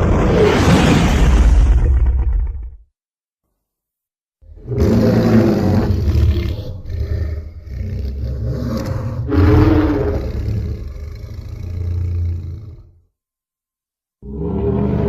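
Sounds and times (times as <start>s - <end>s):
monster roar: 4.5s - 13.0s, 14.2s - 15.0s.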